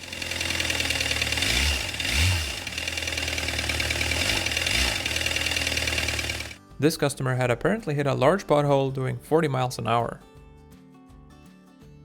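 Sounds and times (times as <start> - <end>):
diesel engine running: 0.0 - 6.6
engine revving: 0.0 - 6.6.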